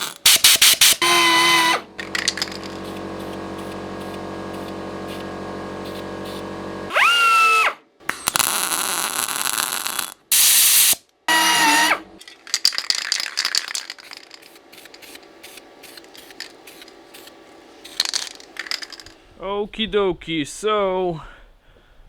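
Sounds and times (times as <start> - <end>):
power tool motor whine: 0.3 - 8.6, 10.7 - 12.2
harsh hissing noise: 13.7 - 19.4.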